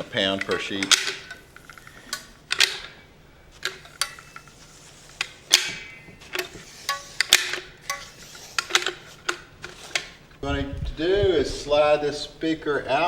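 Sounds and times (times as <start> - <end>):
caulking gun metal clicks: 0.3 - 3.0.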